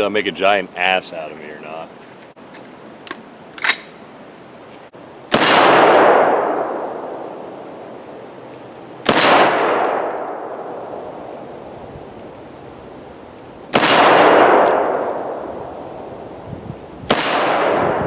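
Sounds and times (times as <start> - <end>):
rifle shots with echo: 5.3 - 7.3, 9.0 - 11.0, 13.7 - 15.5, 17.1 - 18.0.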